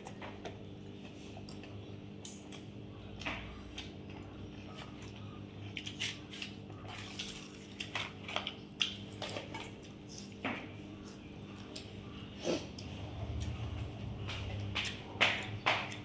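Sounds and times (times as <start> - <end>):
chewing and mouth smacks: 0.0 - 12.0
steady low hum: 0.0 - 16.0.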